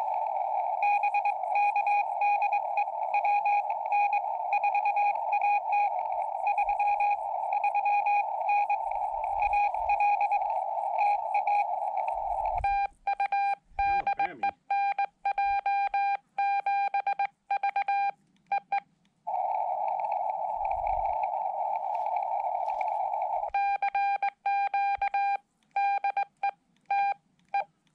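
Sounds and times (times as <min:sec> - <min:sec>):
radio receiver hiss: 0:00.0 - 0:14.6, 0:19.2 - 0:23.7
morse sidetone beep: 0:00.0 - 0:18.8, 0:26.9 - 0:27.7
morse code beeping: 0:00.1 - 0:18.8.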